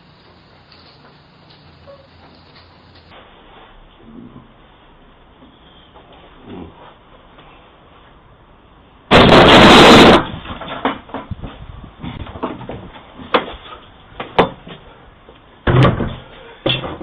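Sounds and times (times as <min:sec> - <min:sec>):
loud harsh distorted noise: 0:09.1 - 0:10.3.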